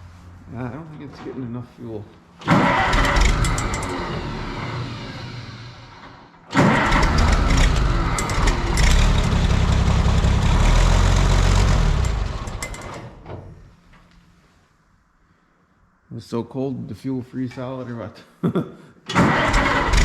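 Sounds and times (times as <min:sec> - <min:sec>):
tractor engine sputtering: 0:02.4 - 0:05.3, 0:06.1 - 0:13.3, 0:19.1 - 0:20.0.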